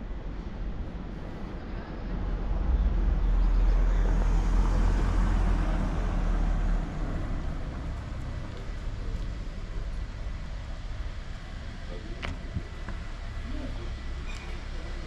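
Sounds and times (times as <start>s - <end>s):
vehicle driving past: 1.8s - 8.6s.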